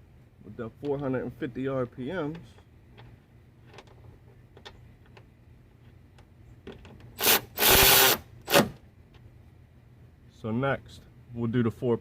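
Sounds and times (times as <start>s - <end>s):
cordless ratchet running: 7.2s - 8.6s.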